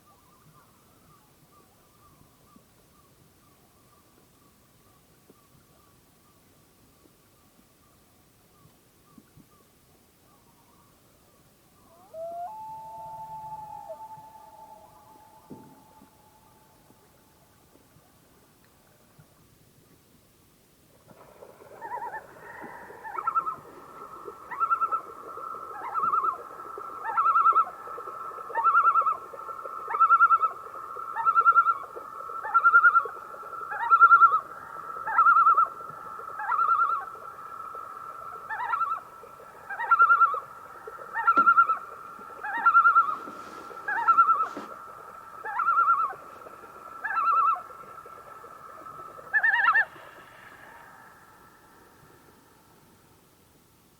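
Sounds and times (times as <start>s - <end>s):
loon calling: 11.8s - 17.2s, 21.7s - 23.8s, 24.4s - 37.2s, 38.2s - 51.0s.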